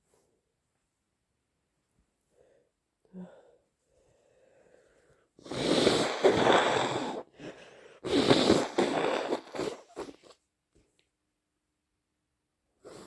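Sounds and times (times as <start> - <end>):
short nasal bursts: 5.4 - 7.3, 8.0 - 10.3
person blowing nose: 5.4 - 10.4.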